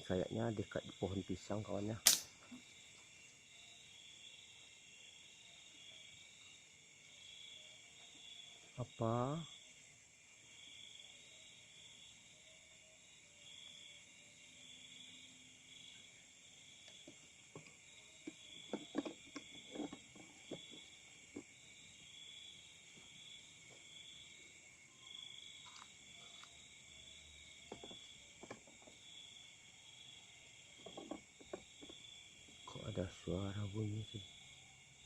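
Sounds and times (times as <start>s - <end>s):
crickets and insects chirring: 0.0s - 35.0s
short knocks and rustles: 30.8s - 32.0s.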